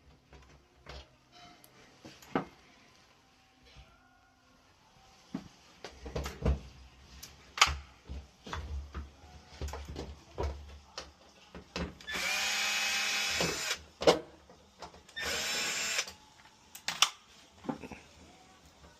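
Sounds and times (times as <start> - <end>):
power drill running: 12.1 - 13.8, 15.2 - 16.1.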